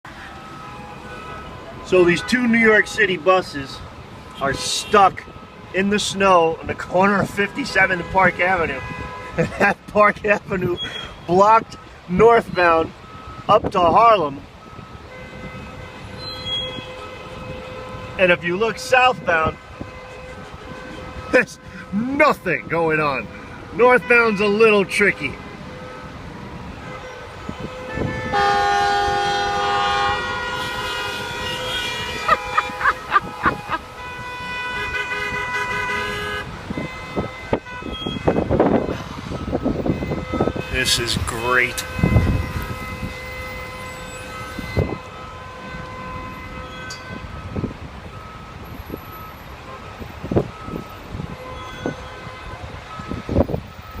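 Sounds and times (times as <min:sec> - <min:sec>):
street traffic noise: 0:00.0 - 0:54.0
vehicle horn blast: 0:07.7 - 0:09.4, 0:15.1 - 0:18.3, 0:26.7 - 0:38.6, 0:39.8 - 0:47.4.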